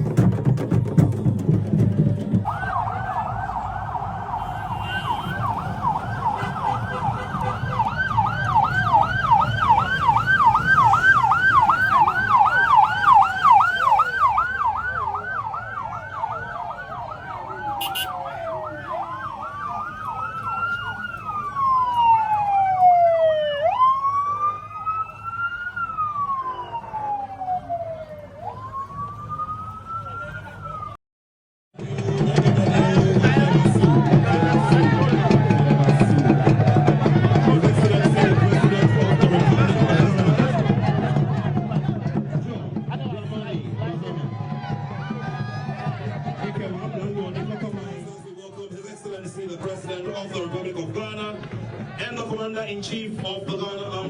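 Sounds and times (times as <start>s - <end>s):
vehicle siren yelping and wailing: 2.4s - 31.0s
higher siren: 2.5s - 31.0s.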